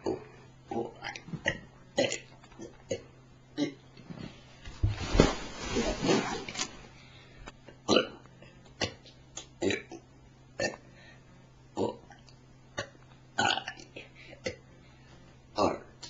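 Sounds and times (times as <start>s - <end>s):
person burping: 0.0s - 3.8s, 10.6s - 10.8s, 11.8s - 12.2s, 12.8s - 14.6s.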